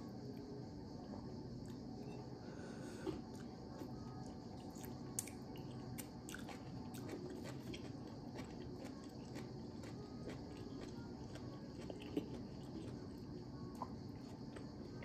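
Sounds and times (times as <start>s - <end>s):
person chewing: 4.8s - 13.2s.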